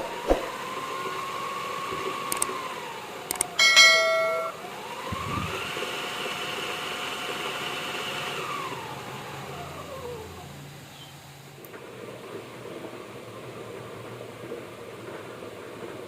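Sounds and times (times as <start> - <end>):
clicks: 2.3 - 2.5, 3.3 - 4.6
loud short steady tone: 3.6 - 4.6.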